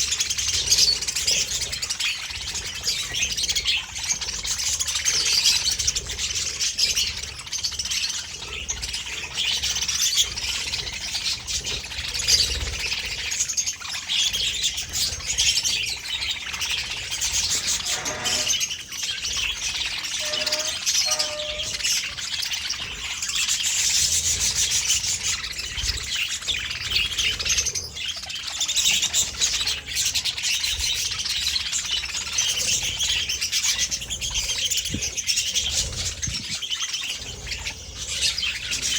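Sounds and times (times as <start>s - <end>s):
budgerigars chattering: 0.0s - 38.9s
lower-pitched bird calls: 17.2s - 18.9s, 19.7s - 22.4s.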